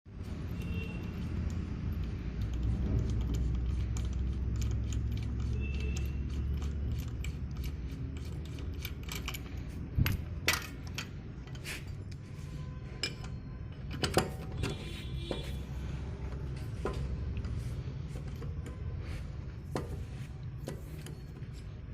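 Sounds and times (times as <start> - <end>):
vehicle rattling and clicking: 0.1 - 12.2, 13.1 - 17.6.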